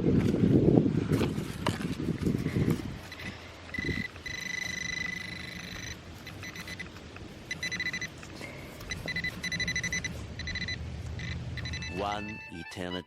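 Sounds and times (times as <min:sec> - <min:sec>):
metal detector beeping: 0:03.0 - 0:08.2, 0:08.8 - 0:13.0.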